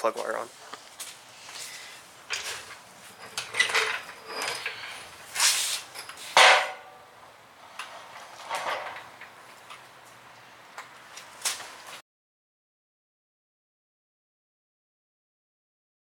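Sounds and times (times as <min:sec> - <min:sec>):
tools clattering and scraping: 0:01.5 - 0:07.0, 0:07.7 - 0:09.9.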